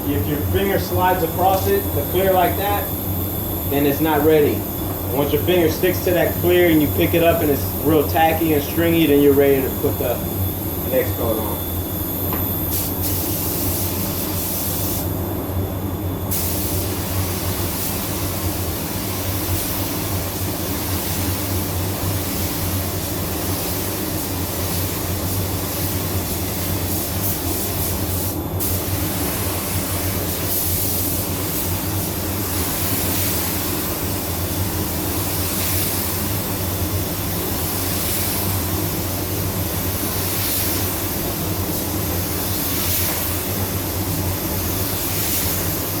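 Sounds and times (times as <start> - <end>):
spray gun hissing: 16.3 - 46.0.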